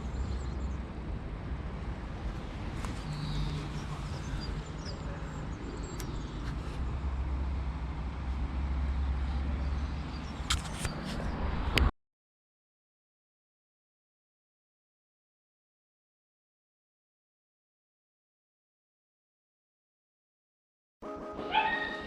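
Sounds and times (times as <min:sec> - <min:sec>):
vehicle engine humming: 0:00.0 - 0:11.9.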